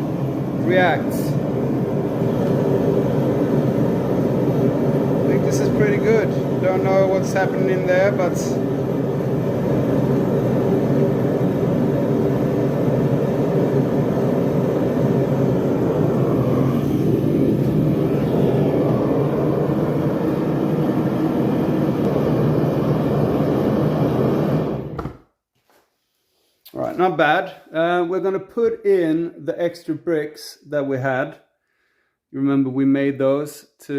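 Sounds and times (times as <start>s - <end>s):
gas burners roaring: 0.0s - 25.2s.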